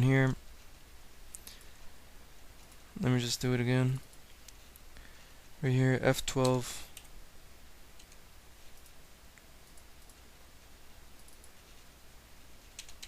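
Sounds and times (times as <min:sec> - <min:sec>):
low steady hum: 0:00.0 - 0:13.0
computer keys clicking: 0:06.3 - 0:07.1, 0:08.0 - 0:09.0, 0:09.6 - 0:10.3, 0:11.1 - 0:11.6, 0:12.6 - 0:13.0.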